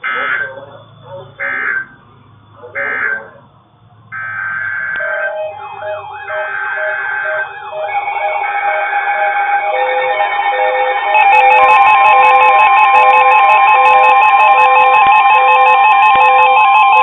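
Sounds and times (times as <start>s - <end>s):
rising and falling siren sweep: 4.1s - 17.0s
screeching data bursts: 4.2s - 17.0s
weather radio alert tones: 4.2s - 17.0s
fast pulsing beep: 5.1s - 17.0s.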